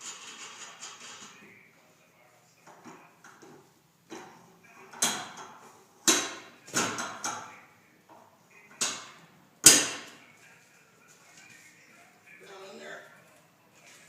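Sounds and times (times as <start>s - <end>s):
hard metal strikes on tire changer: 8.9s - 10.2s.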